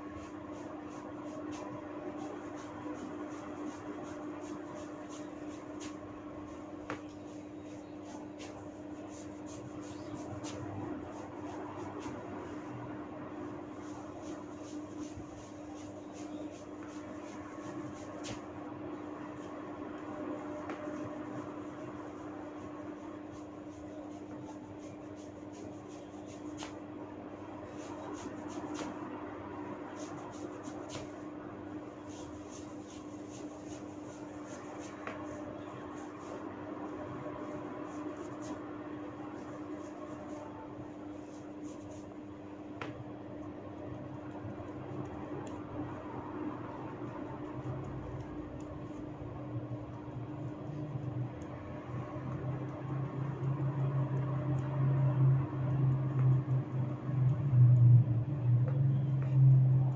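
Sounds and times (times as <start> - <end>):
scratchy hair crackles: 0.0 - 49.4
steady hum: 0.0 - 59.9
low hum: 50.9 - 59.9.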